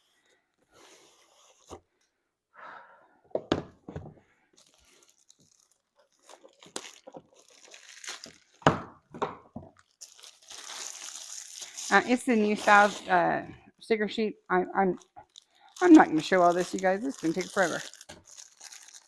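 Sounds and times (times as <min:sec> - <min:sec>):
packaging crinkling and tearing: 0:04.6 - 0:08.7, 0:09.7 - 0:13.2, 0:14.9 - 0:19.0.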